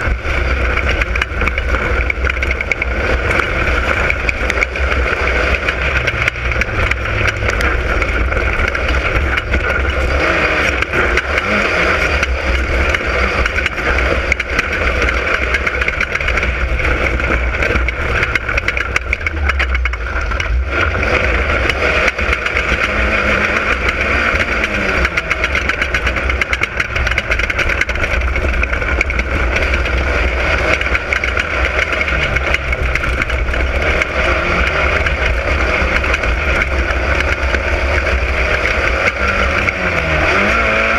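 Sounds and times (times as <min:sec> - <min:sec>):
race car engine rumbling: 0:00.0 - 0:40.9.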